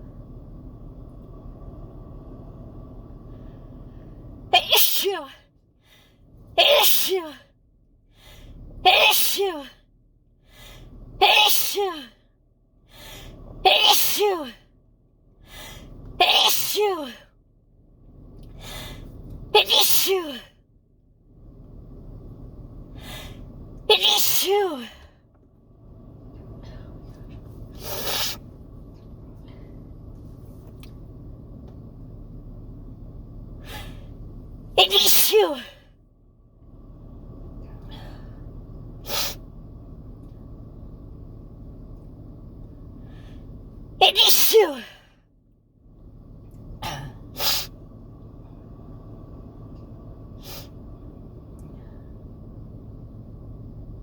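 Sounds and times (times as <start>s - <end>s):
steady low hum: 0.0s - 54.0s
person sneezing: 4.6s - 5.3s, 6.6s - 7.4s, 8.9s - 9.7s, 11.2s - 12.0s, 13.7s - 14.5s, 16.2s - 17.2s, 19.6s - 20.4s, 24.0s - 25.0s, 27.8s - 28.4s, 34.8s - 35.8s, 44.1s - 45.0s, 46.8s - 47.7s
faint breaths: 10.4s - 11.2s, 12.8s - 13.6s, 18.4s - 19.4s, 22.8s - 23.7s, 36.8s - 39.5s, 42.8s - 43.8s
person sniffing: 27.8s - 28.4s, 39.1s - 39.4s, 47.4s - 47.7s.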